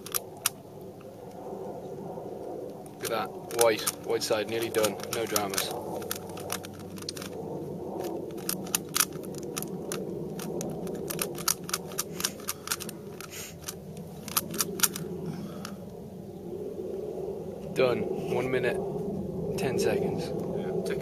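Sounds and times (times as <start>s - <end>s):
puzzle cube layers clicking: 0.0s - 0.6s, 3.5s - 7.4s, 8.0s - 15.0s
steady low rumble: 0.0s - 21.0s.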